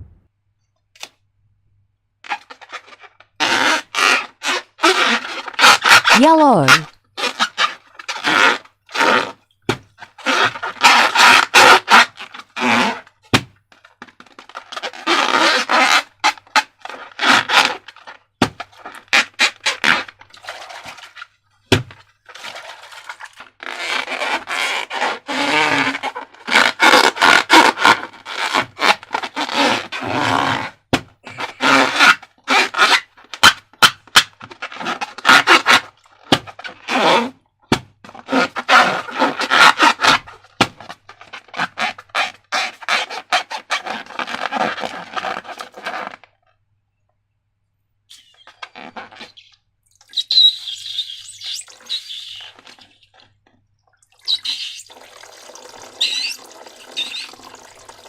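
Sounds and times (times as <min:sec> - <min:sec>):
rubbing and scraping balloons: 0:02.2 - 0:46.3, 0:48.1 - 0:53.4, 0:54.3 - 0:58.0
faint squeaks: 0:48.1 - 0:53.2.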